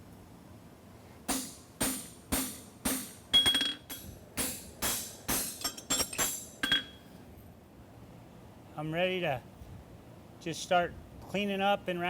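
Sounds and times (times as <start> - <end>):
hammer striking metal on anvil: 1.3 - 7.1.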